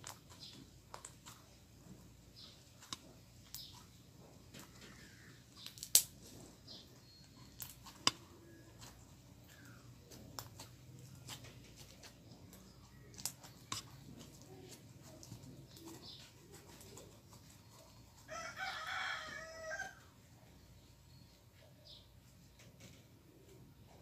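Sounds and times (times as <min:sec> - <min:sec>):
sharp clicks and crackles: 0:04.5 - 0:17.8.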